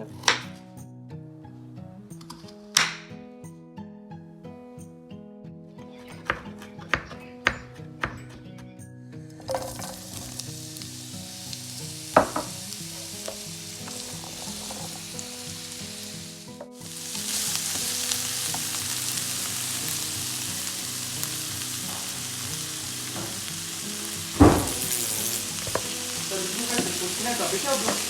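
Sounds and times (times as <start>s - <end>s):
food sizzling in oil: 9.5s - 28.0s.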